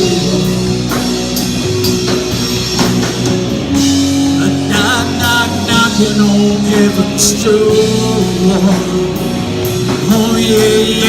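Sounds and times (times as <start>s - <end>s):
person singing: 0.0s - 1.2s, 4.2s - 11.0s
rock band playing: 0.0s - 11.0s.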